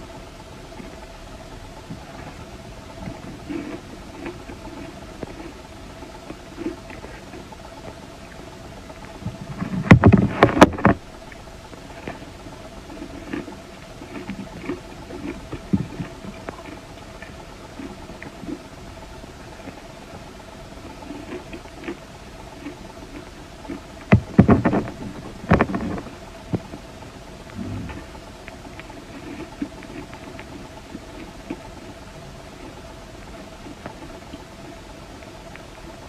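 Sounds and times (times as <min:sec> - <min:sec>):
faint steady hum: 0:00.0 - 0:36.0.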